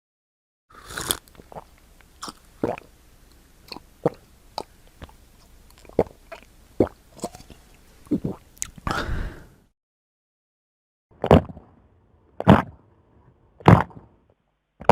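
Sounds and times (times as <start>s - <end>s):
gulping water: 0.8s - 3.0s, 3.6s - 8.9s
mouth clicks: 0.8s - 9.0s, 12.4s - 12.8s.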